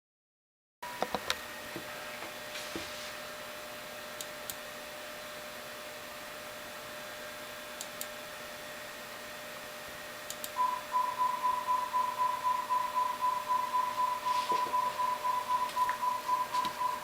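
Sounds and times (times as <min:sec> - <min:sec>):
single-pitch test tone: 0:10.6 - 0:17.0.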